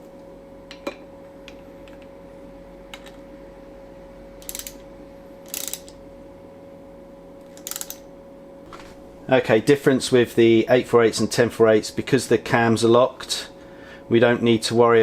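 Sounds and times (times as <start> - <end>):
steady background hum: 0.0 - 15.0
ratchet wrench clicking: 4.4 - 4.8, 5.4 - 6.0, 7.5 - 8.0.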